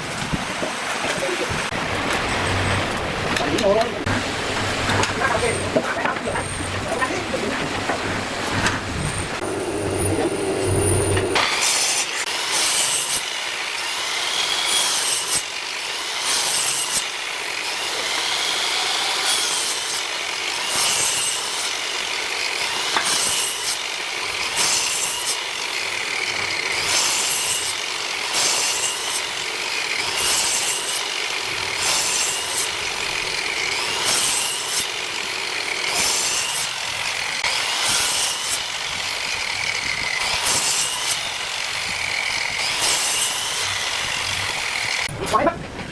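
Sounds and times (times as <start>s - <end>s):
tool scraping wood: 1.9s - 13.3s.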